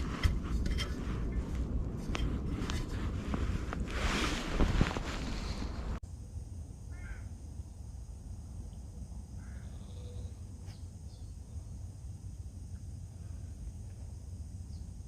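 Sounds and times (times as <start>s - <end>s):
wind buffeting microphone: 0.0s - 6.0s
open-air ambience: 0.0s - 15.0s
distant crow cawing: 6.9s - 7.3s, 9.4s - 10.3s.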